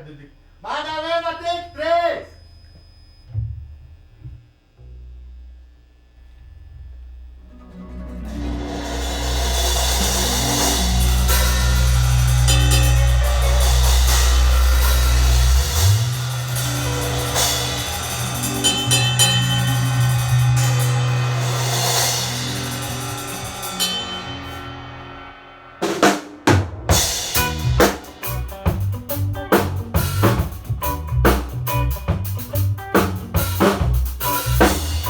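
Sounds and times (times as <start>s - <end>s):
soft low sustained notes: 1.6s - 25.8s
band playing: 7.7s - 25.2s, 25.8s - 35.0s
drum kit with cymbals: 8.2s - 35.0s.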